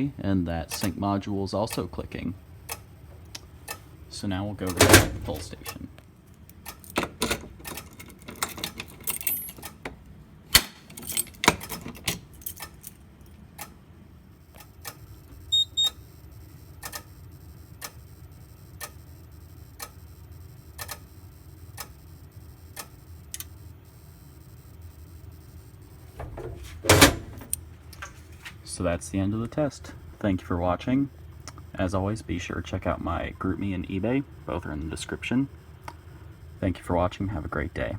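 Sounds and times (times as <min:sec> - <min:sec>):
alarm module clicking steadily: 0:00.0 - 0:08.8, 0:11.5 - 0:27.6
short high beeps: 0:15.5 - 0:16.0
rattling and knocks of pull station: 0:26.1 - 0:27.6.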